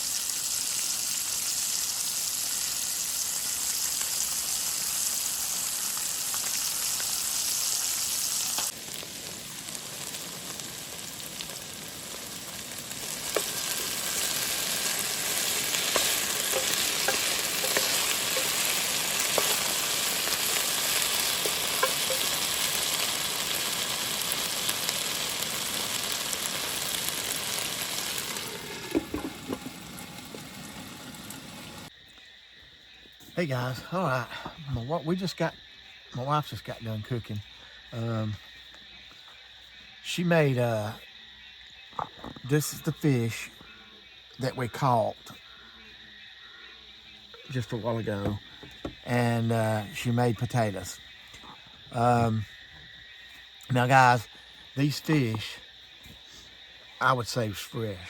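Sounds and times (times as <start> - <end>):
fish sizzling in hot oil: 0.0 - 31.9.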